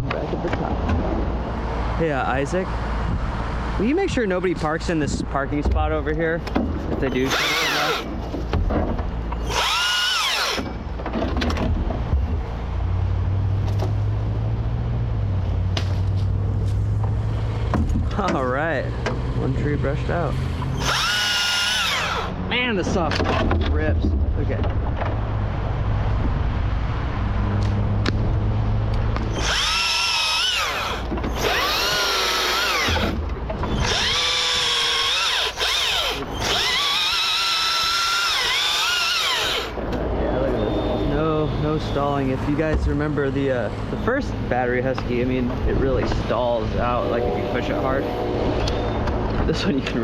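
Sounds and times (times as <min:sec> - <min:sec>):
chainsaw revving: 0:07.1 - 0:08.1, 0:09.4 - 0:10.6, 0:20.7 - 0:22.4, 0:29.3 - 0:39.8
steady low hum: 0:39.7 - 0:50.0.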